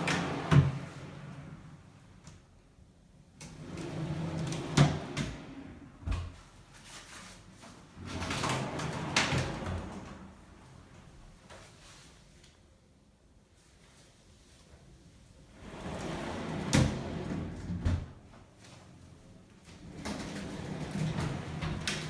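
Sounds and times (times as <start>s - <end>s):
wooden drawers sliding: 19.8s - 22.0s.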